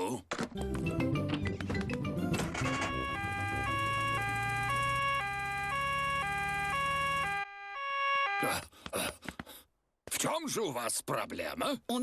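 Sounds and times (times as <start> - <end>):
cartoon two-tone siren: 2.6 - 8.6.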